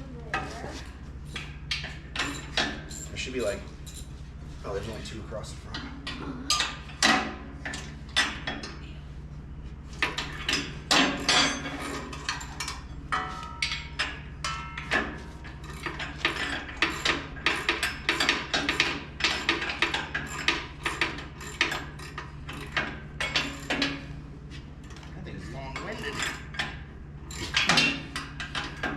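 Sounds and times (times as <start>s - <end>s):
low steady hum: 0.0s - 28.9s
metallic clinks of wrenches: 1.3s - 4.2s, 10.2s - 24.1s, 25.8s - 28.9s.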